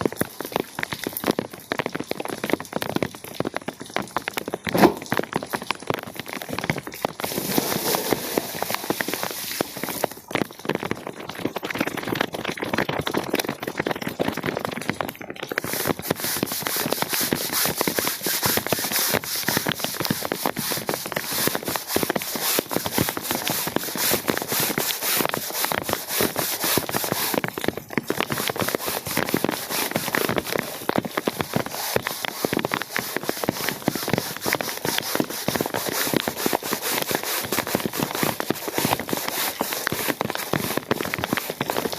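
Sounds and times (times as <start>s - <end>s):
rain falling on wet carpet: 0.0s - 41.9s
tool scraping across rug: 4.7s - 5.1s, 7.2s - 9.4s.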